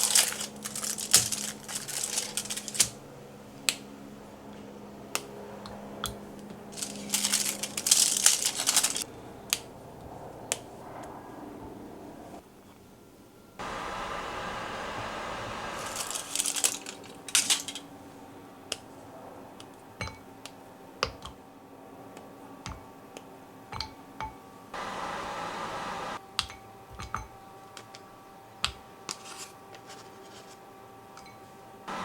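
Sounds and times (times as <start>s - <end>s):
steady hiss: 13.6s - 17.9s, 24.8s - 26.2s
utensils tapping bowls and dishes: 26.4s - 27.4s.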